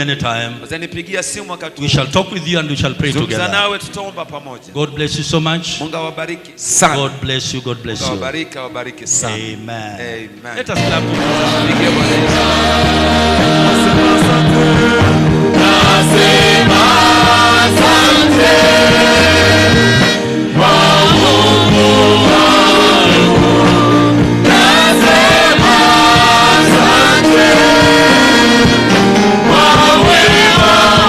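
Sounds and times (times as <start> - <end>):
gospel singing: 10.7 - 31.0
instrumental backing with bass: 10.8 - 31.0.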